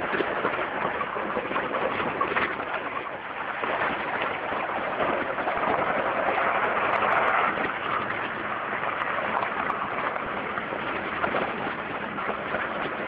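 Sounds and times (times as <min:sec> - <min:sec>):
vehicle driving off-road: 0:03.4 - 0:13.0.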